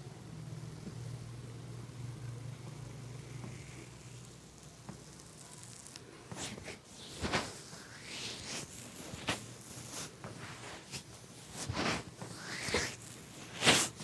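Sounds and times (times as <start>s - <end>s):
hands rubbing skin and hair: 4.8s - 14.0s.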